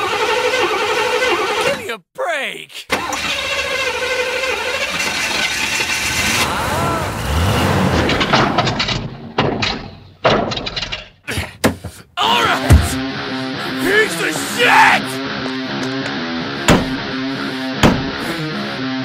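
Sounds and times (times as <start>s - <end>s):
voices: 1.6s - 2.9s, 6.4s - 7.4s, 12.2s - 13.0s, 13.6s - 15.2s
car engines revving: 3.3s - 9.2s.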